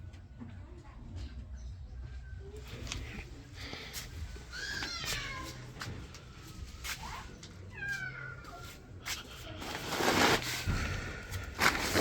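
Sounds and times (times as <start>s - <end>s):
cat meowing: 4.5s - 5.7s, 7.7s - 8.8s
loud rustling scrape: 9.5s - 12.0s.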